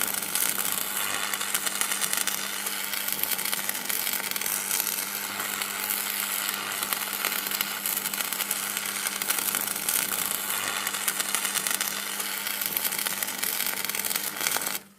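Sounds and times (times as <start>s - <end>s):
electric crackling: 0.0s - 14.9s
electric hum: 0.0s - 14.9s.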